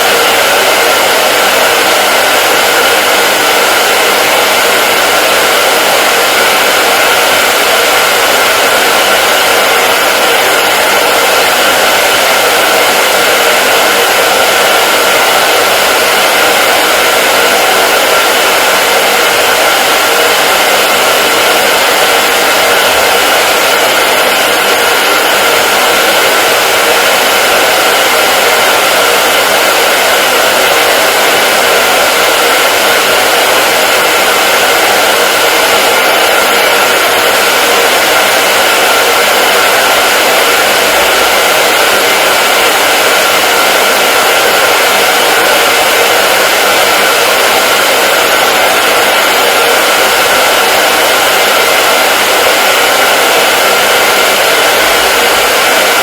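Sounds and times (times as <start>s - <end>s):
hair dryer running: 0.0s - 56.0s.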